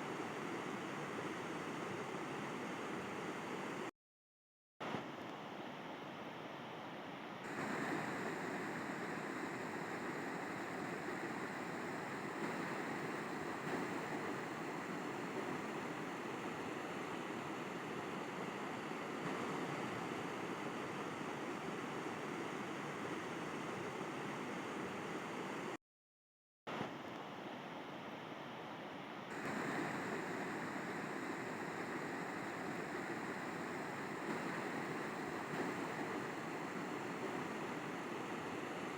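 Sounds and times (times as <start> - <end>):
river water rushing and burbling: 7.4 - 25.7, 29.3 - 38.9.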